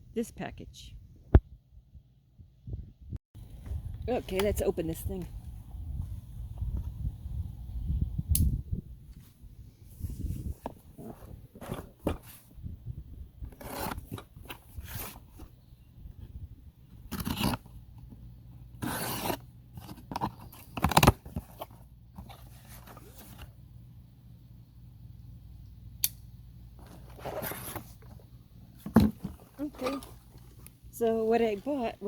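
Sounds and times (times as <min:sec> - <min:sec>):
sharp click: 0:08.3 - 0:08.6, 0:26.0 - 0:26.2.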